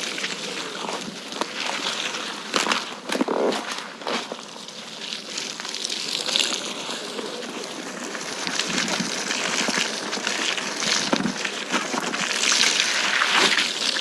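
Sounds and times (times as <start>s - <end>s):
muddy water splashing: 0.0s - 14.0s.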